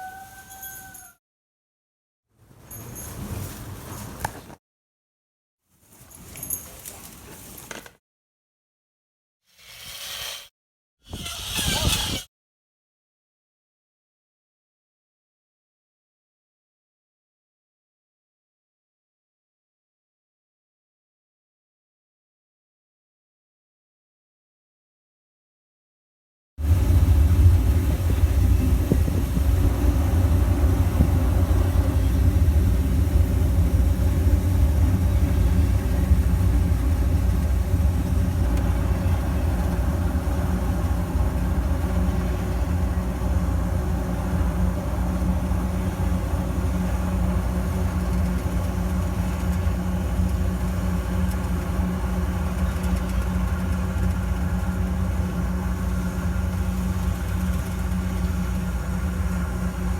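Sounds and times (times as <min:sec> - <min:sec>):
farm machinery engine humming: 0:26.6 - 0:59.9.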